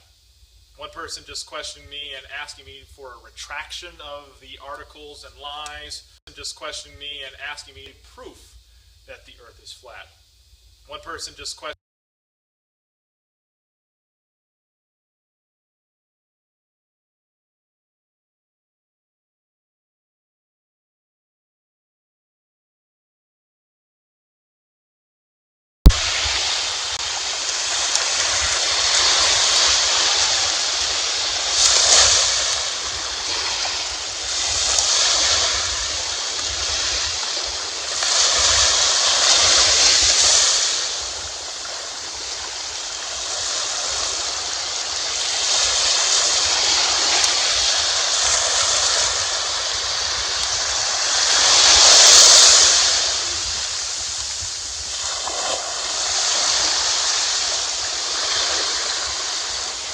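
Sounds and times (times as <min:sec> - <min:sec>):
waves washing onto shore: 0:25.9 - 0:59.9
wind rumble on microphone: 0:25.9 - 0:59.9.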